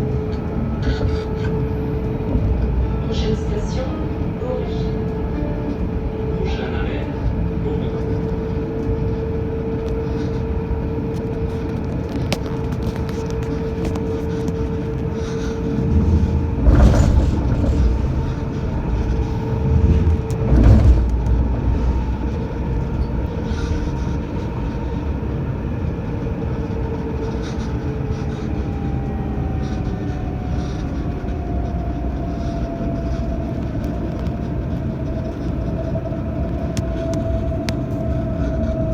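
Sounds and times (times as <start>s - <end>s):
low rumble: 0.0s - 38.9s
tram motors whining: 0.0s - 38.9s
heavy thumps: 11.4s - 24.1s.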